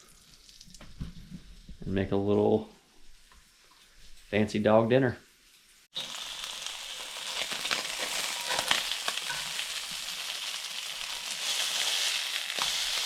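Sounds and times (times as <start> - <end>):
fish sizzling in a skillet: 5.9 - 13.0.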